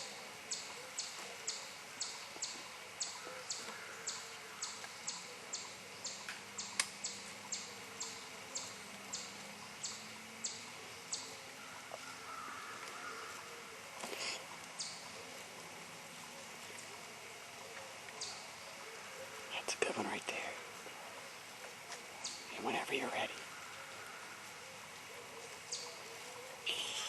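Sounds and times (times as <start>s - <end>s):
faint outdoor hiss: 0.0s - 27.0s.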